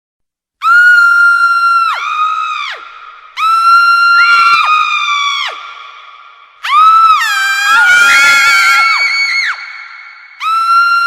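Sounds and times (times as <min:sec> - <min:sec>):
girls screaming: 0:06.6 - 0:11.0.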